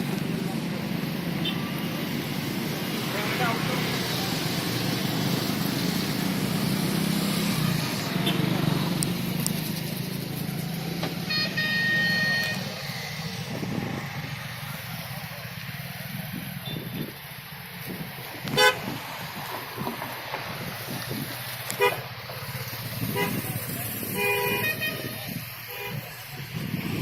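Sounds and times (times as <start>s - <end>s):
car horn: 11.2s - 12.8s, 18.5s - 18.9s, 21.7s - 22.0s, 23.1s - 26.1s.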